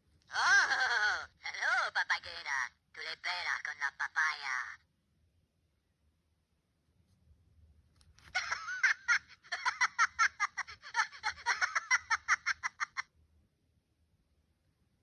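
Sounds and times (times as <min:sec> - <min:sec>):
high-pitched cartoon laughter: 0:00.3 - 0:02.0, 0:08.3 - 0:13.1.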